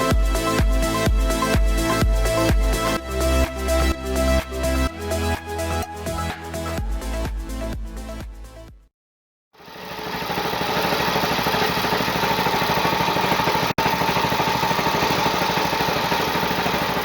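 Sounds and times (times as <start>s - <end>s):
belt machine motor running: 9.6s - 17.0s.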